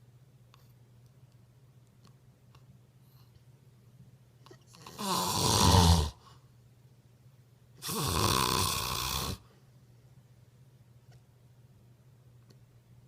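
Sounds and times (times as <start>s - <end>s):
person snoring: 4.8s - 6.2s, 7.8s - 9.4s.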